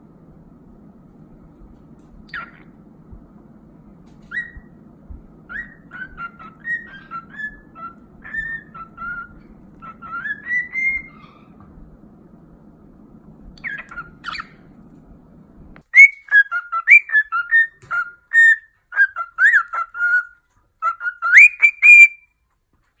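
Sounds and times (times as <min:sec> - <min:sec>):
low hum: 0:00.0 - 0:16.0
bird whistling notes: 0:04.2 - 0:04.8, 0:05.5 - 0:11.6, 0:13.6 - 0:14.7, 0:15.9 - 0:22.3.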